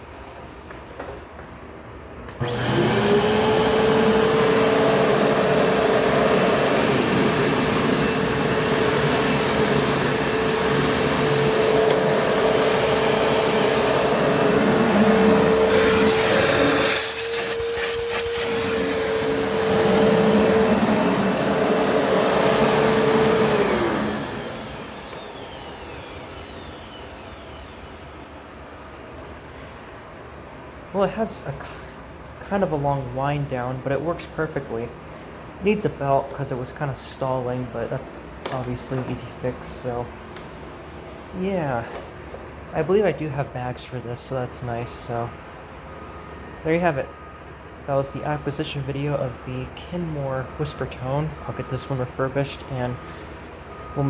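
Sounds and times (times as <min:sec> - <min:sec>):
vacuum cleaner motor whining: 0:02.4 - 0:28.8, 0:53.0 - 0:54.0
vacuum cleaner winding down: 0:02.4 - 0:28.8.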